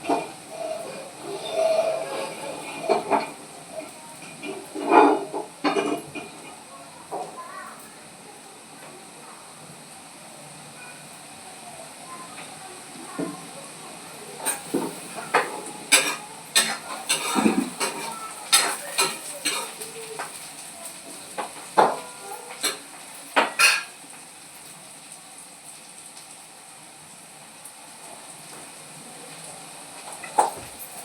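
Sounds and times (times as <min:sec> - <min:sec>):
metal spoon scraping pan: 0:00.0 - 0:03.4, 0:14.5 - 0:19.8
vegetables sizzling in pan: 0:00.0 - 0:31.0.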